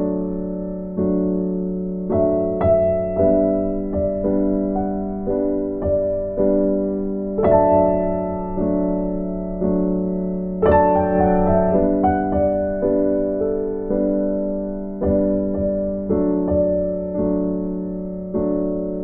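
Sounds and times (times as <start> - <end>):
slow gentle piano music: 0.0 - 19.0.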